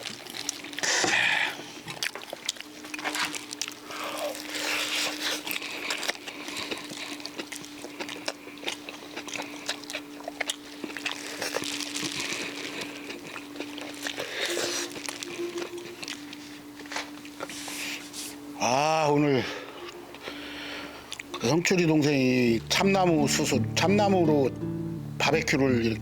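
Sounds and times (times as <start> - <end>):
people chewing and crunching: 0.0 - 18.2, 19.4 - 22.3.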